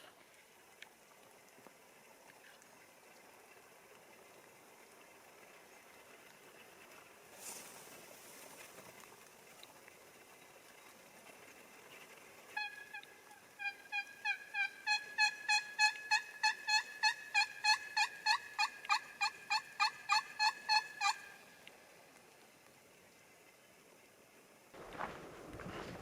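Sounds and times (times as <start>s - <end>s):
turkey yelping: 13.6s - 21.3s.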